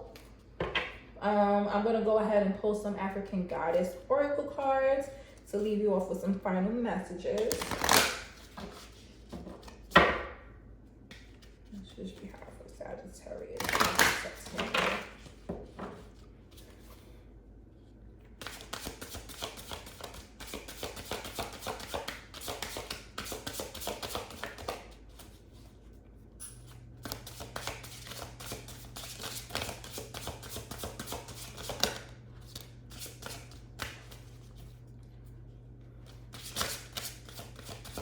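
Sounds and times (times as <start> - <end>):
cards being shuffled: 7.4 - 9.9, 18.4 - 25.7, 27.0 - 34.7, 36.0 - 38.0.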